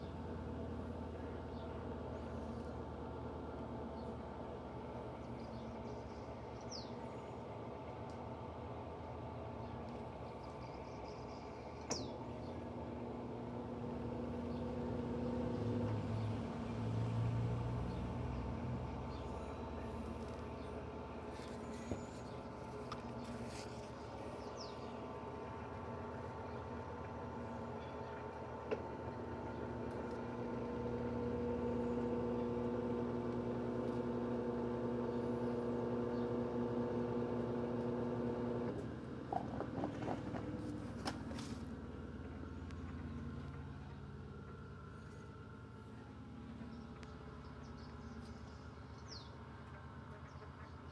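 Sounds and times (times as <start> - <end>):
washing machine spinning: 29.3 - 38.7.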